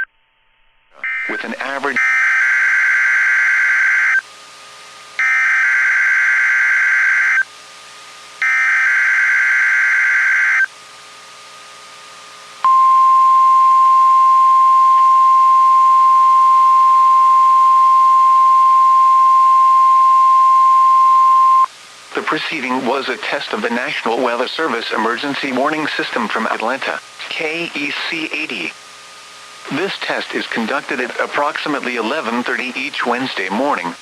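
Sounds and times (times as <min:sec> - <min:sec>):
radio static: 0:00.9 - 0:02.5, 0:22.1 - 0:28.8, 0:29.6 - 0:34.0
steady warning alarm tone: 0:01.0 - 0:04.2, 0:05.2 - 0:07.5, 0:08.4 - 0:10.7, 0:12.6 - 0:21.7.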